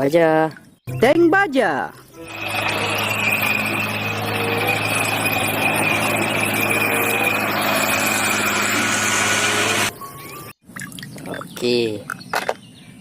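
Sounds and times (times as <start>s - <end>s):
heavy engine humming: 2.0s - 10.0s
continuous high squeal: 2.0s - 10.6s.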